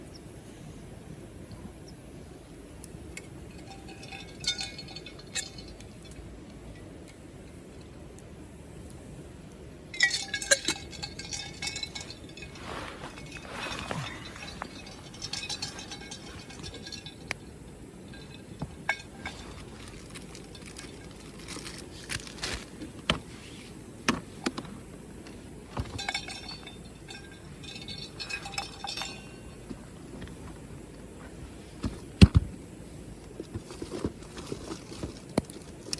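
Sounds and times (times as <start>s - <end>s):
hard gear clinking and clattering: 10.0s - 22.2s, 25.7s - 29.7s.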